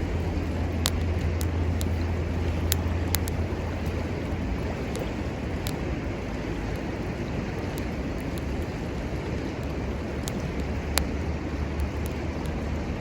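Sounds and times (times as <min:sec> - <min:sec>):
sharp faint clicks: 0:00.0 - 0:05.8
low hum: 0:00.0 - 0:13.0
river water rushing: 0:00.0 - 0:13.0.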